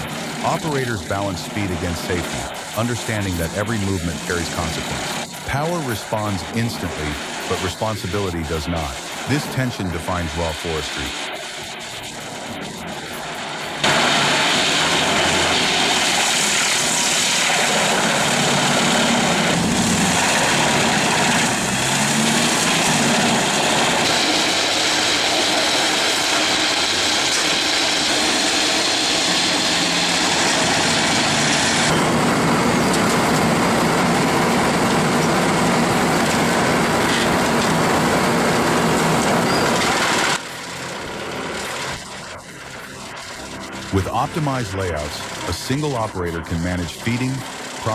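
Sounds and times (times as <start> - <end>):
heavy forestry machinery running: 0.0 - 47.9.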